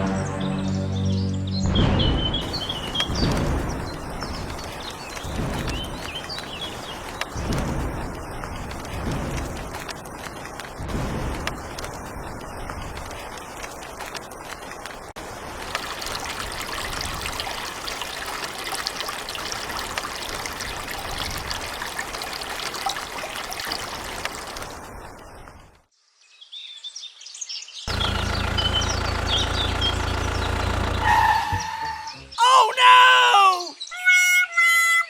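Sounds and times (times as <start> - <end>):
water trickling and pouring: 2.4 - 25.9.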